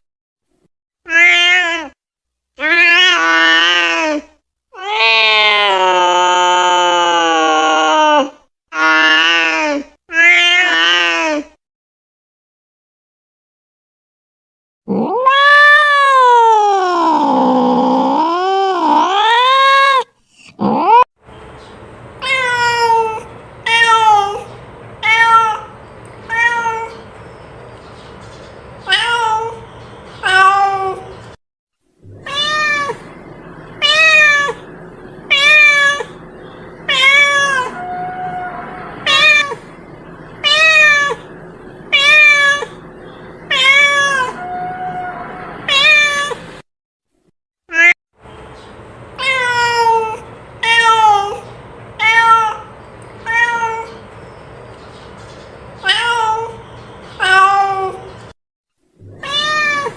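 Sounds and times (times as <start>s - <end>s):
cat meowing: 1.1s - 2.0s, 2.6s - 4.2s, 4.8s - 8.3s, 10.1s - 11.4s, 14.9s - 21.0s, 22.2s - 27.0s, 28.8s - 29.6s, 30.2s - 31.1s, 32.1s - 33.2s, 33.8s - 34.7s, 35.3s - 36.2s, 36.9s - 39.7s, 40.4s - 41.3s, 41.9s - 42.8s, 43.5s - 46.4s, 47.7s - 48.0s, 49.2s - 54.0s, 55.8s - 56.6s, 57.2s - 58.1s, 59.0s - 59.9s.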